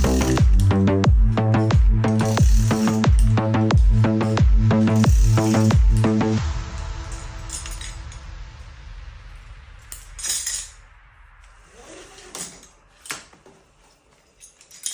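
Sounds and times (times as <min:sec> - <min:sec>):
music: 0:00.0 - 0:14.9
sharp metal clinks: 0:01.6 - 0:06.4.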